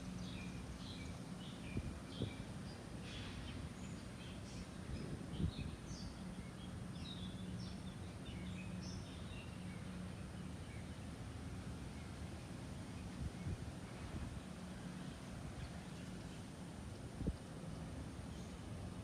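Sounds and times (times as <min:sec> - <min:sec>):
small birds chirping: 0:00.0 - 0:11.2.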